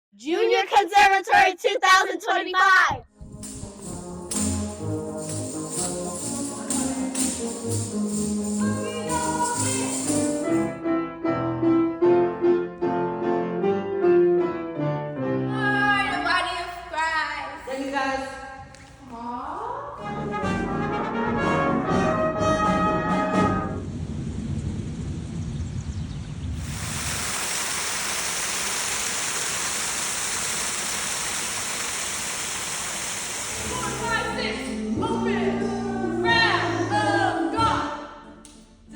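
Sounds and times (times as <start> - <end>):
instrumental music: 3.1 - 15.6, 20.0 - 23.8
tambourine jingling: 3.2 - 10.8
water rushing: 26.6 - 34.8.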